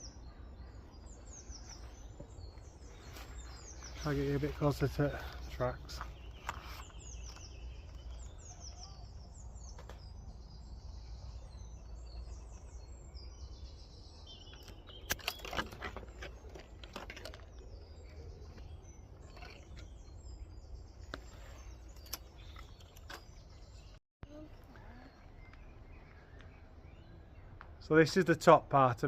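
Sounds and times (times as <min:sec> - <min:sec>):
songbirds chirping and singing: 0:00.0 - 0:29.0.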